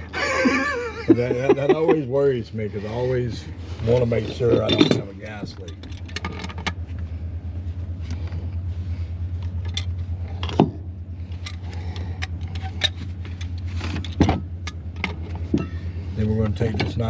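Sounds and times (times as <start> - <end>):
low motor hum: 0.0 - 17.0
metal tools clinking and knocking: 4.2 - 6.7.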